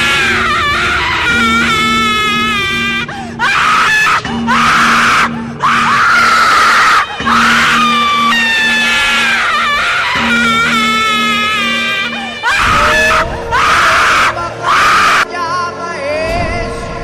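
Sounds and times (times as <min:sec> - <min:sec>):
ghostly screaming wail: 0:00.0 - 0:15.3.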